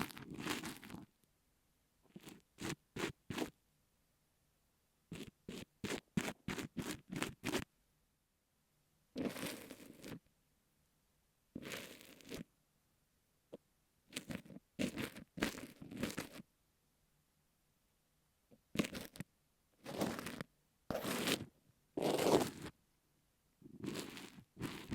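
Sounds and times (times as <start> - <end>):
ear pick scraping sand: 14.2 - 16.4, 19.8 - 22.7, 23.8 - 24.9.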